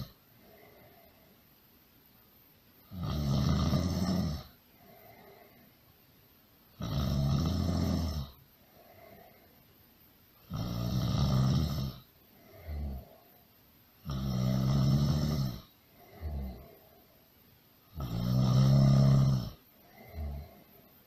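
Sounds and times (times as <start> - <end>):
soft breath: 0.0 - 1.7, 4.6 - 6.0, 8.5 - 9.9, 12.2 - 13.6, 15.7 - 17.5, 19.6 - 21.0
loud snoring: 2.9 - 4.6, 6.8 - 8.4, 10.5 - 13.2, 14.0 - 16.8, 17.9 - 20.7.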